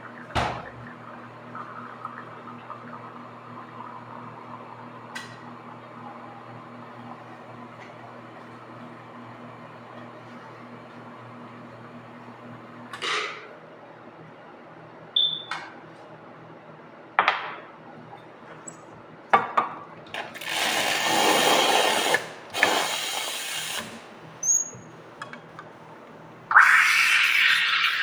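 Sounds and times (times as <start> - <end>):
espresso machine hum: 0.0 - 12.9, 20.4 - 24.3, 26.5 - 28.0.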